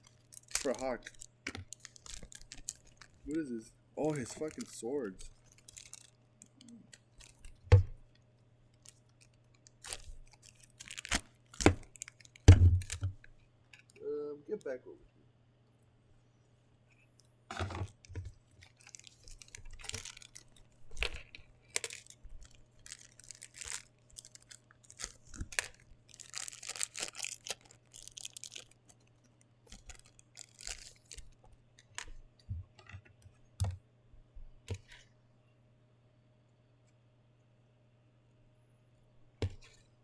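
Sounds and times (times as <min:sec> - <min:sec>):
packaging crinkling and tearing: 0:00.0 - 0:08.1, 0:08.7 - 0:13.4, 0:17.5 - 0:32.3
plastic parts clicking: 0:00.1 - 0:03.4, 0:04.1 - 0:07.9, 0:17.5 - 0:29.0.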